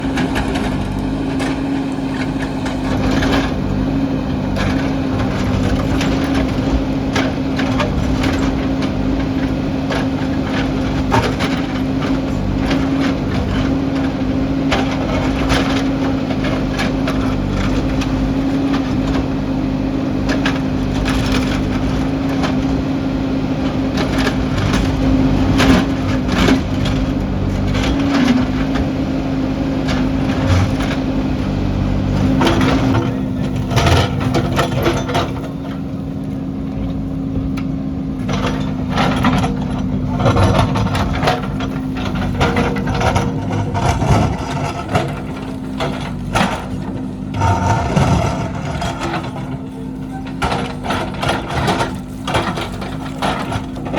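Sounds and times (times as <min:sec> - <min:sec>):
diesel engine running: 0:00.0 - 0:53.9
bucket cracking and scraping rock: 0:38.3 - 0:53.9.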